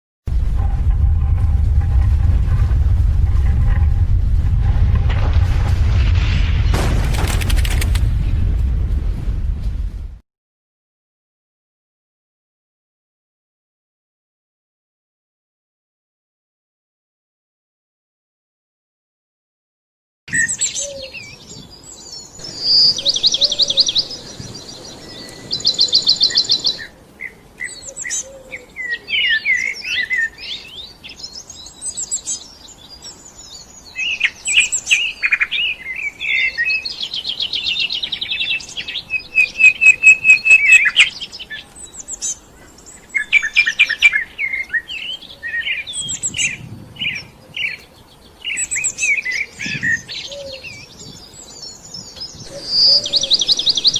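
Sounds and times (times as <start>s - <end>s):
songbirds singing: 20.3s - 53.9s.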